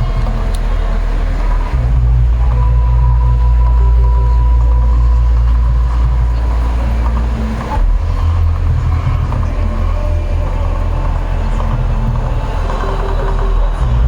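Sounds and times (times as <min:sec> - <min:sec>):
loud deep rumble: 0:00.0 - 0:14.0.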